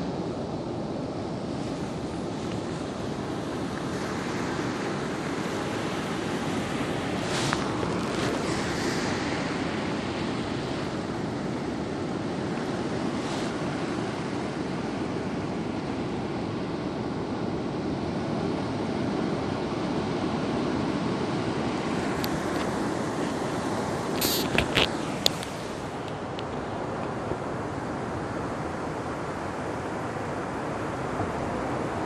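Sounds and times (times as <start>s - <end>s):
waves breaking on beach: 0.0s - 32.0s.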